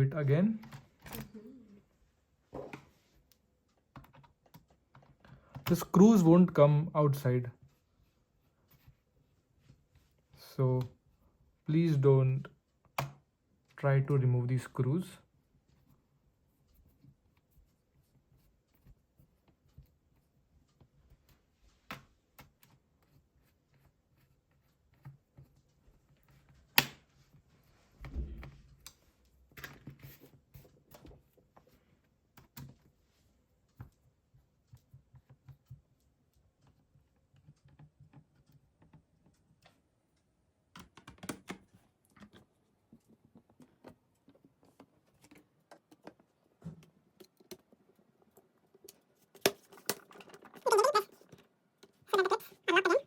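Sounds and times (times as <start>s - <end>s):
small clicks and taps: 2.7s - 6.0s, 28.4s - 52.1s.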